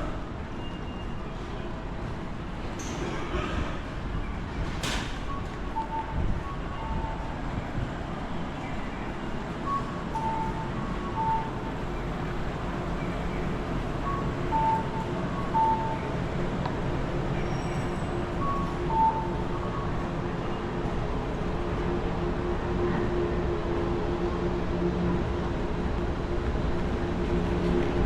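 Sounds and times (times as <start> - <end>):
road traffic: 7.5 - 22.5
pedestrian crossing signal two-note call: 9.6 - 20.0.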